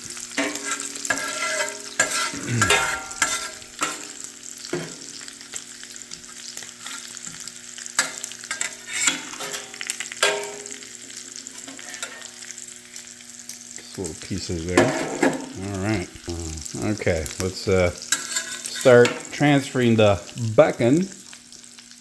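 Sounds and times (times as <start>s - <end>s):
bacon and sausages sizzling: 0.0s - 22.0s
spatula scraping griddle plate: 0.3s - 5.3s, 5.9s - 12.6s, 18.0s - 19.4s.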